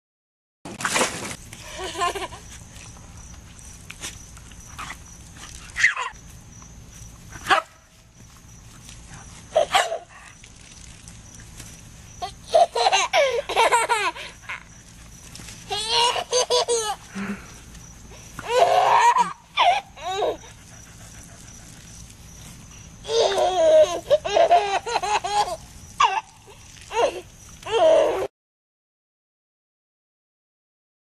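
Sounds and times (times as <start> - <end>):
person laughing high-pitched: 1.6 - 2.5, 18.4 - 20.4.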